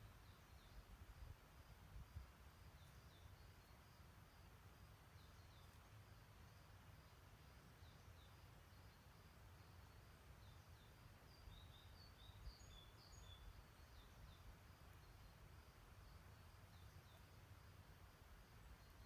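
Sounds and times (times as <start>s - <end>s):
small bird chirps: 0.0s - 0.9s, 2.7s - 3.9s, 5.1s - 15.5s, 16.1s - 17.4s
low outdoor rumble and hiss: 0.0s - 19.0s.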